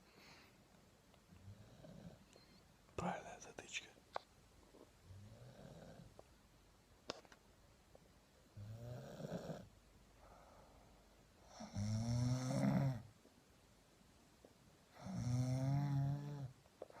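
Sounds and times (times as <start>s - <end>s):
quiet breathing: 0.0s - 6.3s, 8.5s - 13.1s
low buzzing snores: 1.4s - 2.3s, 5.1s - 6.2s, 8.6s - 9.7s, 11.4s - 13.1s, 14.9s - 16.6s.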